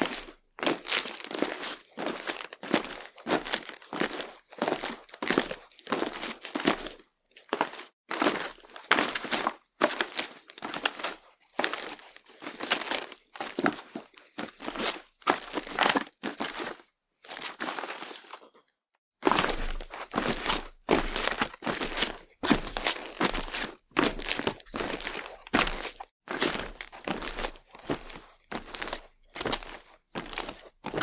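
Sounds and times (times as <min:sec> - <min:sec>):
footsteps on crunchy surface: 0:00.0 - 0:18.5, 0:19.2 - 0:31.0.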